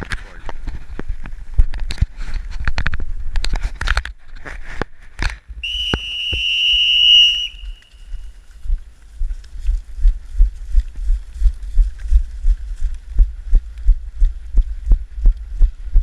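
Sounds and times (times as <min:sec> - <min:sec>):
rustling and clicks: 0:00.0 - 0:06.5
whistle blown: 0:05.6 - 0:08.1.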